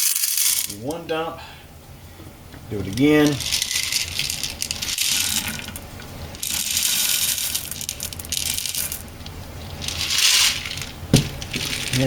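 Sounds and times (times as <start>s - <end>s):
popcorn kernels rattling into popper: 0.0s - 0.8s, 2.8s - 9.1s, 9.8s - 12.0s.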